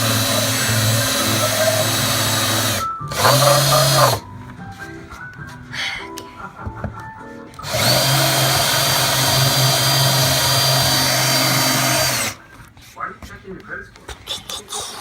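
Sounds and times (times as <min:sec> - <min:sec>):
electric drill running: 0:00.0 - 0:04.2, 0:07.6 - 0:12.4
background music from tv: 0:00.0 - 0:15.0.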